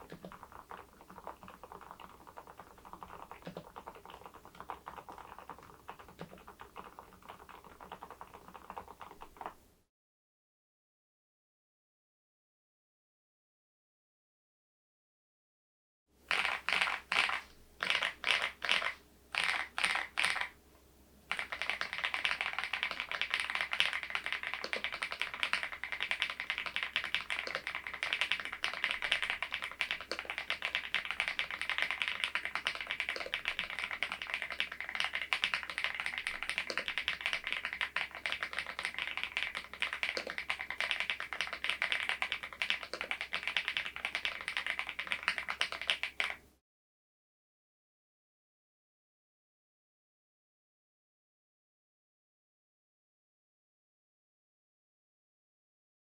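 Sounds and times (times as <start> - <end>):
mechanical keyboard typing: 0.0 - 9.5, 16.3 - 20.5, 21.3 - 46.4.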